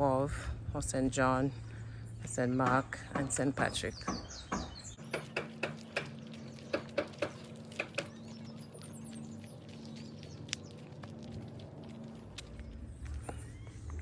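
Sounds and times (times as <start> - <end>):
birds chirping: 1.6 - 14.0
footsteps on road: 5.0 - 14.0
low steady hum: 5.0 - 14.0.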